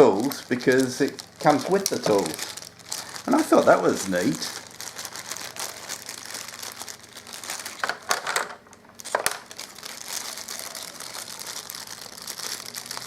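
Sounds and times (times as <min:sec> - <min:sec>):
packaging crinkling: 0:00.0 - 0:13.0.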